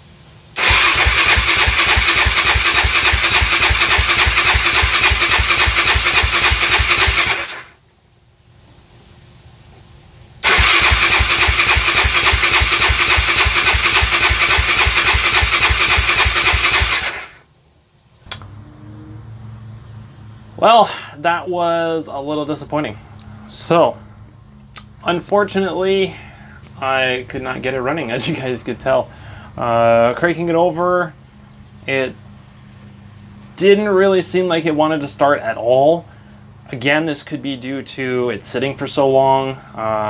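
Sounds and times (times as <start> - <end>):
engine cranking on electric starter: 0.6 - 7.8, 10.4 - 17.4
short click: 18.3 - 18.5.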